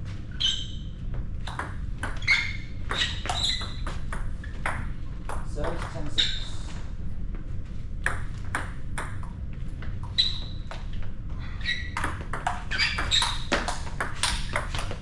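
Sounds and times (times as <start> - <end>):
table tennis ball clicking: 12.0 - 15.0.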